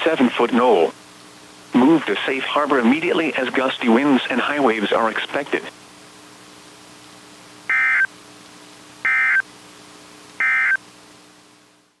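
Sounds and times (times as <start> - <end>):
faint steady hum: 0.0 - 12.0
screeching two-tone digital data bursts: 7.7 - 8.1, 9.1 - 9.4, 10.4 - 10.8.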